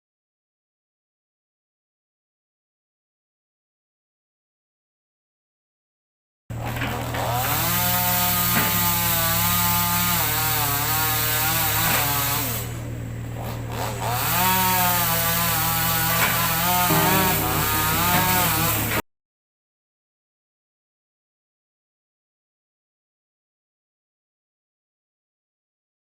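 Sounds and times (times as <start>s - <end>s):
chainsaw cutting wood: 6.7s - 12.8s, 13.4s - 19.0s.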